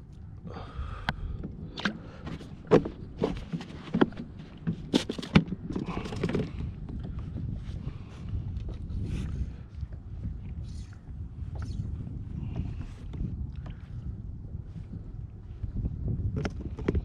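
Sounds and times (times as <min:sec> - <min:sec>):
low rumble and hiss: 0:00.0 - 0:05.0.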